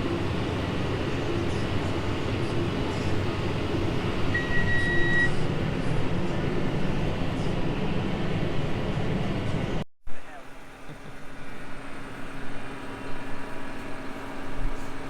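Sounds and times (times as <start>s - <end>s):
long electronic beep: 4.3s - 5.4s.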